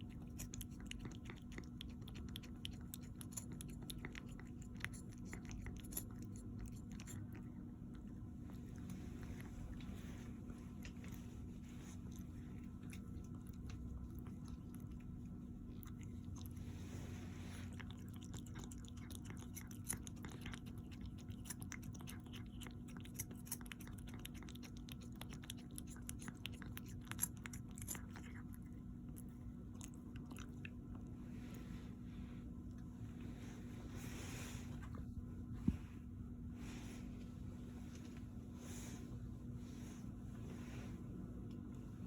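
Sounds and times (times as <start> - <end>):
crunchy food chewing: 0.0 - 31.2
steady low hum: 0.0 - 42.0.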